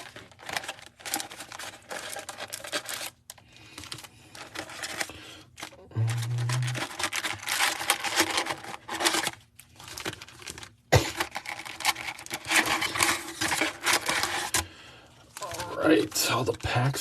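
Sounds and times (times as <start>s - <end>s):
wrapper tearing: 0.0s - 14.6s, 15.2s - 16.6s
foil wrappers crinkling: 0.0s - 17.0s.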